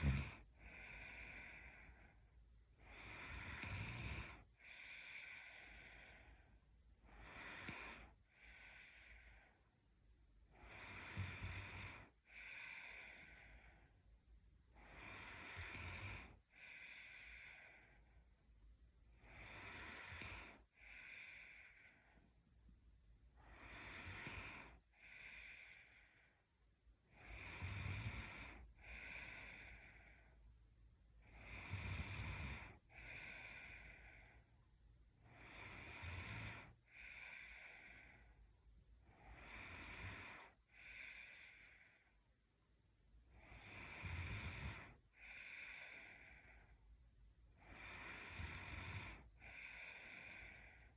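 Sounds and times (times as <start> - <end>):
woman breathing and snoring: 0.0 - 50.9.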